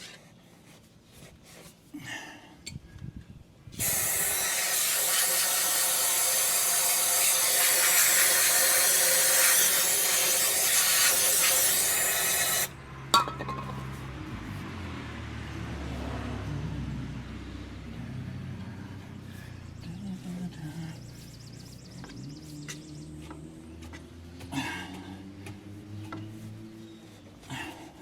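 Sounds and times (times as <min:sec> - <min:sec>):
hissing water spray: 0:03.8 - 0:12.7.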